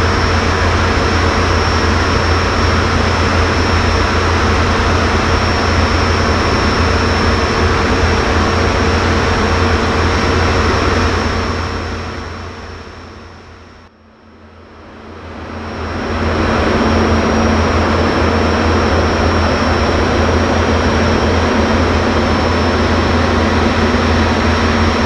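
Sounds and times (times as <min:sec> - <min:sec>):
high engine whine: 0:00.0 - 0:25.0
jet engine roar: 0:00.0 - 0:25.0.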